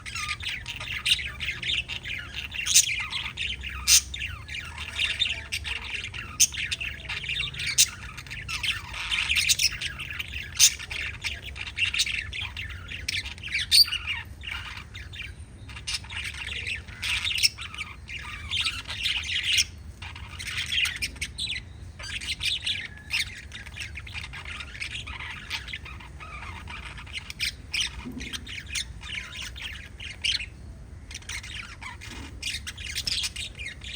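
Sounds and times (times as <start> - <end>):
lovebirds chirping: 0.0 - 33.9
lovebirds squawking: 0.0 - 33.9.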